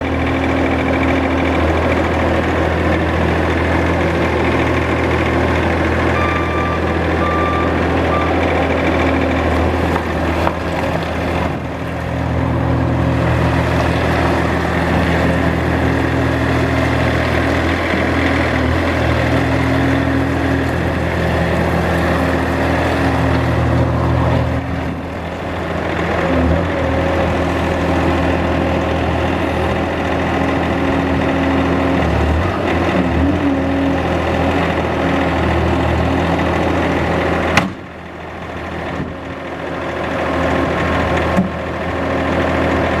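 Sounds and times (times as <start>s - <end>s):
diesel engine running: 0.0s - 43.0s
short high beeps: 6.2s - 8.6s.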